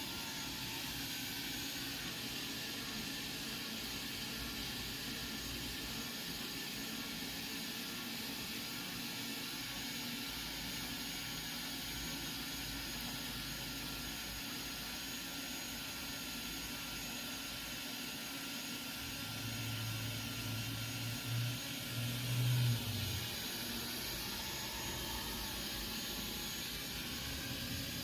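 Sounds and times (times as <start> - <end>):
robot vacuum motor whir: 18.9 - 28.0.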